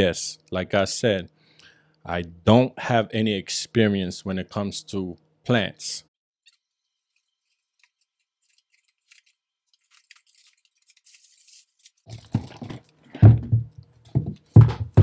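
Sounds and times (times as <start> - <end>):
packaging rustling: 6.9 - 13.0
plastic pot knocks and scrapes: 12.0 - 15.0.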